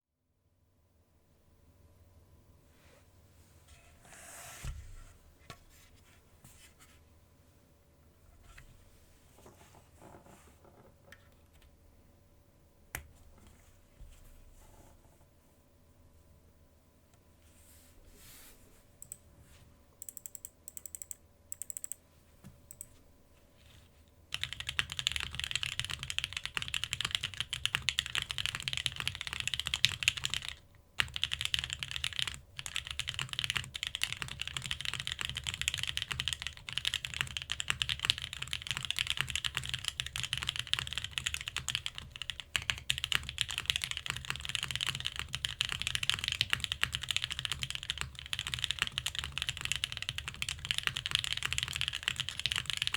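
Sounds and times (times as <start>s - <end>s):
mechanical keyboard typing: 20.0s - 22.0s, 24.3s - 52.9s.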